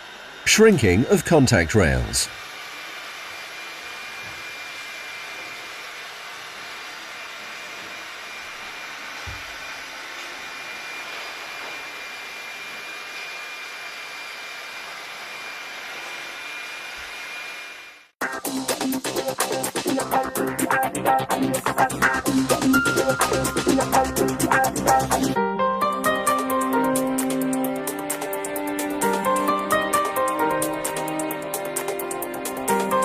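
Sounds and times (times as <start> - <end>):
heat gun blowing air: 1.8 - 18.2.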